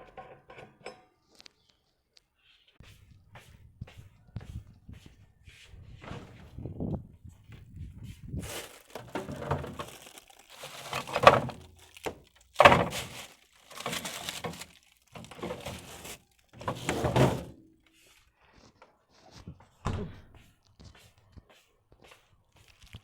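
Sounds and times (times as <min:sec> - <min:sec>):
cookware knocking and clattering: 0:00.0 - 0:01.1.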